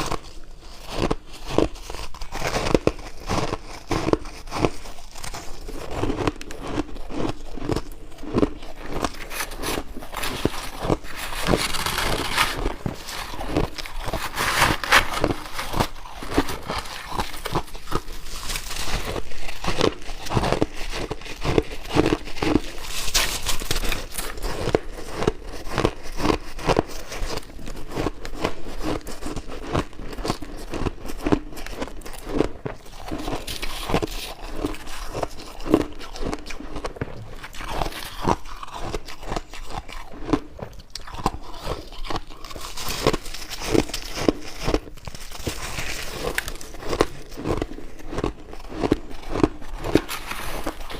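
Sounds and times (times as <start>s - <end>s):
ice being chewed: 0.0s - 50.9s.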